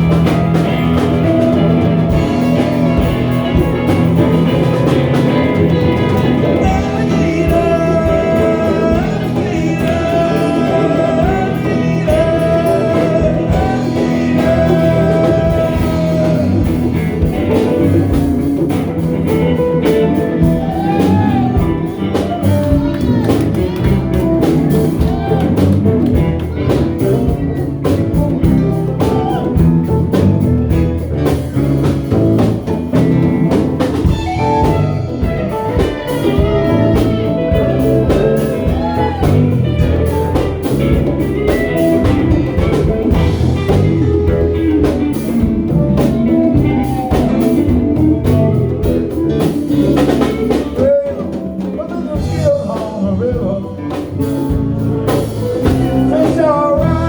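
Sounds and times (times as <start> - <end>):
drums: 0.0 - 57.0
guitar: 0.0 - 57.0
ragtime band playing: 0.0 - 57.0.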